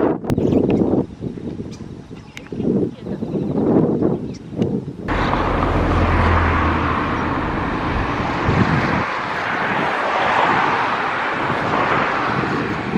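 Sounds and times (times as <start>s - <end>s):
heavy low rumble: 5.1s - 9.4s.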